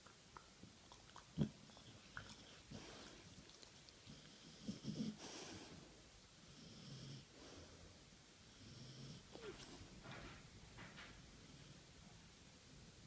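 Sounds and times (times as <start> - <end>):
mouth smacking: 0.0 - 5.2
dog snoring: 4.1 - 5.7, 6.5 - 7.3, 8.6 - 9.8.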